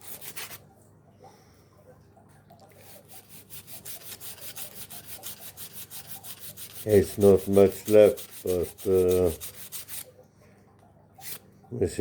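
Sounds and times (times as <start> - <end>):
sandpaper rubbing on wood: 2.9 - 10.0.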